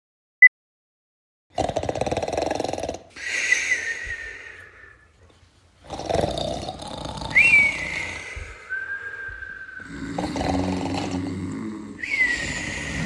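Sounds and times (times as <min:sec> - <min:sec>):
rasping snore: 0:01.5 - 0:03.3, 0:05.8 - 0:08.6, 0:09.8 - 0:13.0
high whistling breath: 0:03.2 - 0:05.2, 0:07.2 - 0:10.5, 0:12.0 - 0:13.0.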